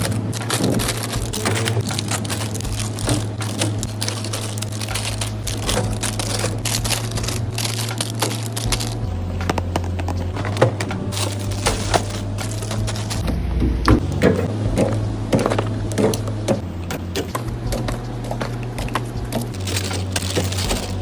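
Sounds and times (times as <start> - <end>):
items clicking and tapping: 0.0 - 21.0
steady low hum: 0.0 - 21.0.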